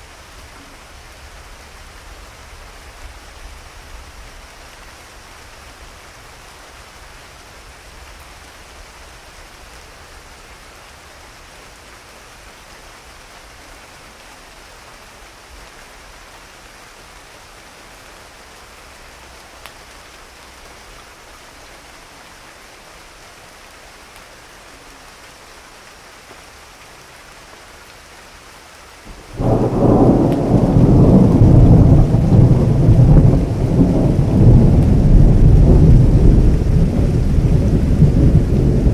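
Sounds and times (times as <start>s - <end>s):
steady rain falling: 0.0s - 38.9s
thunder clap and rumble: 29.1s - 38.9s.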